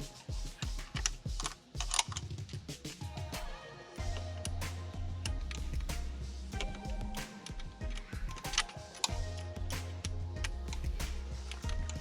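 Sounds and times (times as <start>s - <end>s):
music with steady bass line: 3.0s - 12.0s.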